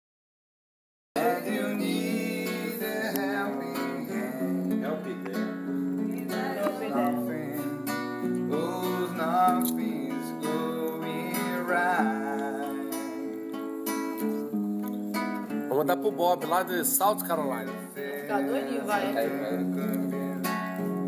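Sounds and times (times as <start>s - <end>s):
person singing: 1.2s - 14.5s, 17.8s - 21.0s
acoustic guitar strummed: 1.2s - 21.0s.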